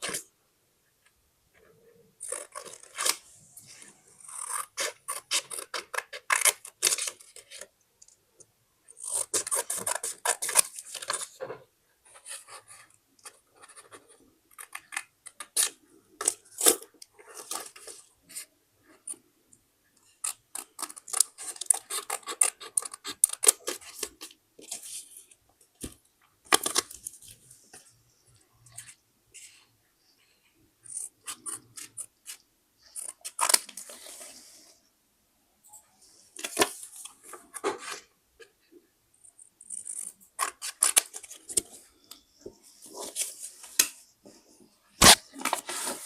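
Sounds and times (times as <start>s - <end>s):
paper rustling: 45.0s - 46.0s.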